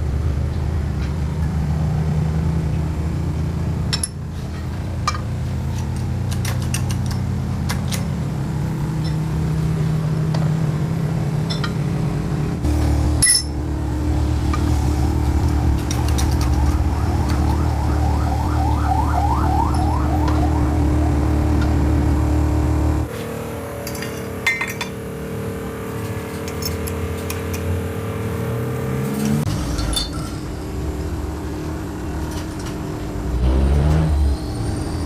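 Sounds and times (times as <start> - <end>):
short rising squeaks: 33.3 - 35.0.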